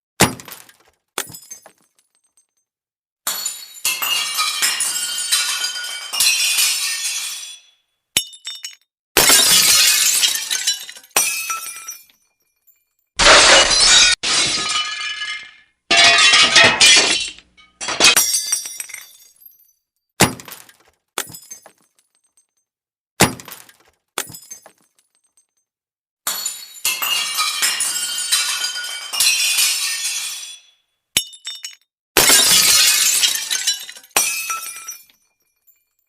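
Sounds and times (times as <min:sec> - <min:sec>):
glass smashing: 0:00.2 - 0:02.6, 0:03.3 - 0:12.2, 0:13.2 - 0:22.5, 0:23.2 - 0:25.5, 0:26.3 - 0:35.9
glass shards tinkling: 0:32.4 - 0:36.0.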